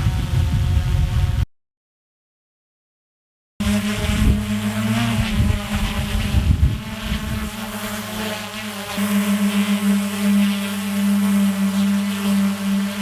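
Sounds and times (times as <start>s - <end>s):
wind buffeting microphone: 0.0s - 1.4s, 3.8s - 7.7s
drone propellers humming: 3.6s - 13.0s.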